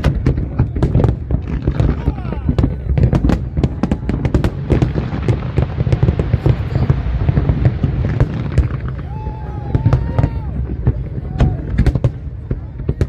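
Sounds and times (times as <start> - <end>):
fireworks bangs and crackles: 0.0 - 13.0.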